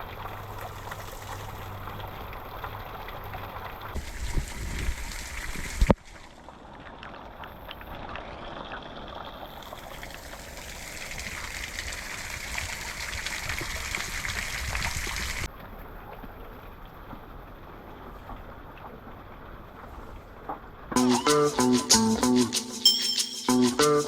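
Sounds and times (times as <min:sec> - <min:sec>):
bike tyres hissing through mud: 0:00.0 - 0:06.6, 0:09.5 - 0:15.5
rain: 0:00.0 - 0:21.0.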